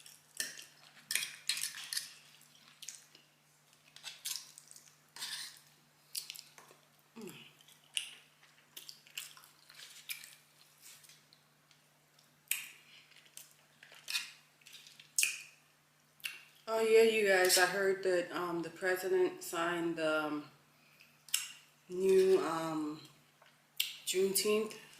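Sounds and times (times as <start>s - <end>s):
wet chewing smacks: 7.4s - 11.4s.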